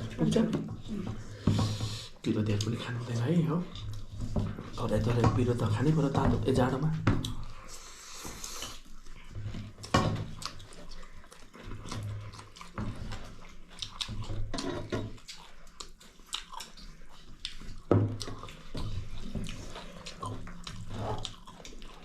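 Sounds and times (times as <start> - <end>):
people chewing food: 0.0 - 22.0
wet mouth clicks and smacks: 15.2 - 18.6.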